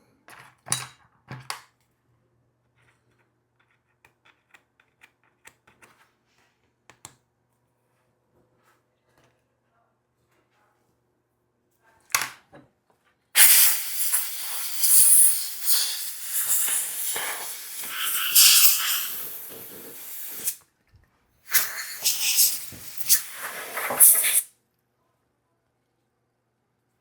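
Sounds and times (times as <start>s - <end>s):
air blower hissing: 13.4s - 20.6s, 21.5s - 24.5s.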